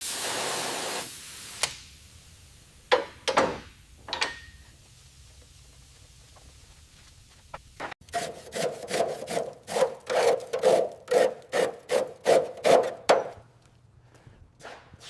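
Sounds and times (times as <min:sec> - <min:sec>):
hand tool scraping a surface: 0:08.1 - 0:13.4.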